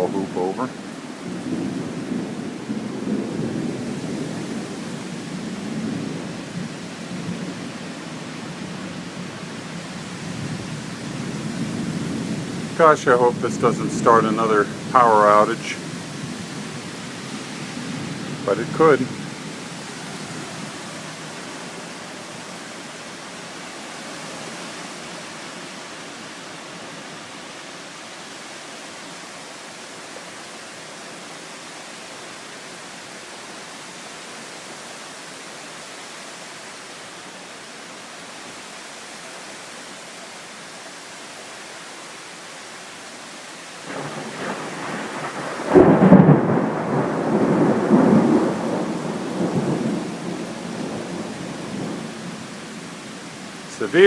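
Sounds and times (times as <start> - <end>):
heavy rain pouring: 0.0 - 54.0
thunder clap and rumble: 43.9 - 52.1.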